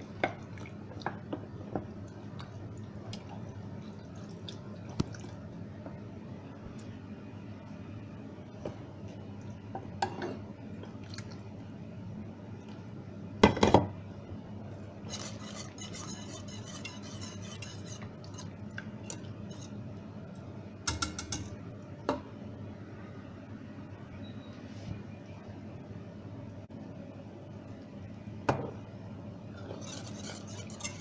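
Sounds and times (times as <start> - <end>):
steady low hum: 0.0 - 31.0
utensils clattering against dishes: 15.1 - 18.5, 29.6 - 31.0.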